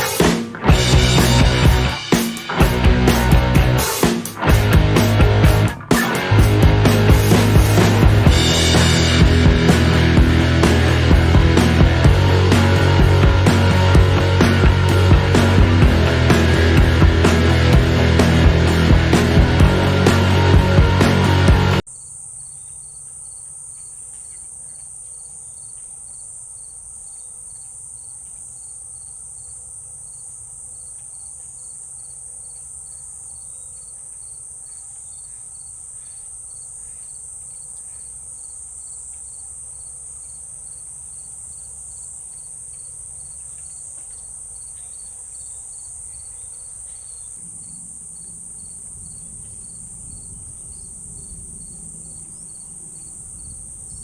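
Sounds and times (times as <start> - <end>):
insect chirping: 0.0 - 3.2, 21.8 - 54.0
high-pitched insect chorus: 0.0 - 4.5, 21.8 - 54.0.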